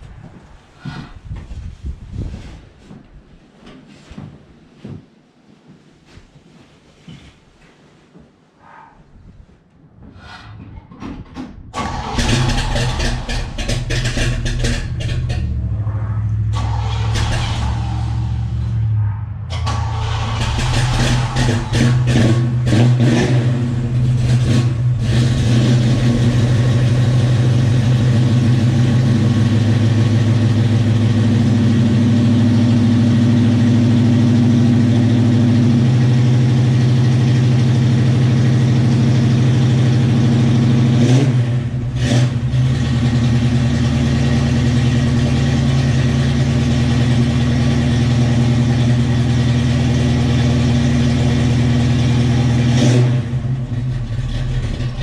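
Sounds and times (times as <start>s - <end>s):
car engine idling: 11.8s - 55.0s
engine revving: 11.8s - 55.0s.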